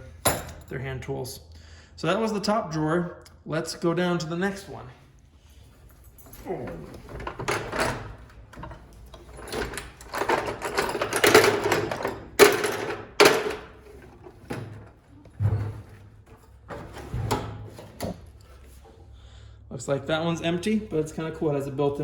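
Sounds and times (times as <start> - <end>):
drawers sliding with scraping rattle: 6.4 - 19.0
drawers knocking shut: 15.4 - 16.0.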